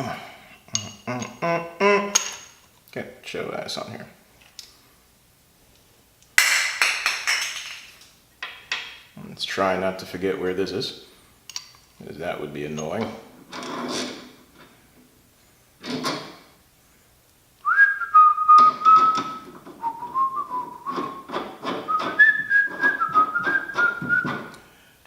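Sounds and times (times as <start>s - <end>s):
tools clicking and knocking: 2.1s - 2.7s, 6.4s - 9.1s, 11.5s - 12.0s, 20.9s - 24.6s
man whistling a tune: 17.6s - 24.5s.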